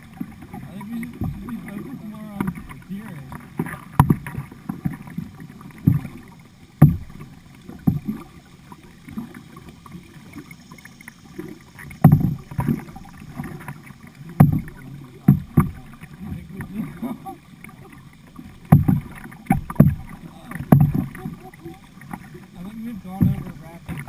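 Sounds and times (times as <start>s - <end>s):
paddle strokes in water: 0.0s - 24.0s
rushing water: 0.0s - 24.0s
sharp thumps: 3.9s - 5.0s, 5.8s - 6.2s, 6.8s - 7.2s, 11.9s - 13.4s, 14.4s - 16.4s, 18.6s - 21.4s, 23.2s - 24.0s.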